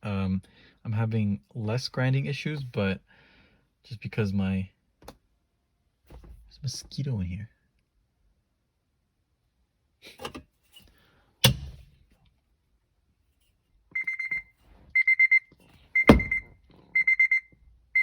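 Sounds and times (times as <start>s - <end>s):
electronic alarm beeping: 14.0s - 18.0s.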